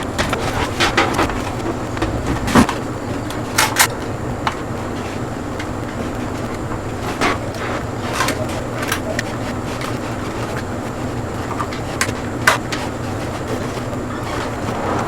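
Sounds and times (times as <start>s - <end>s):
low hum: 14.0s - 15.0s.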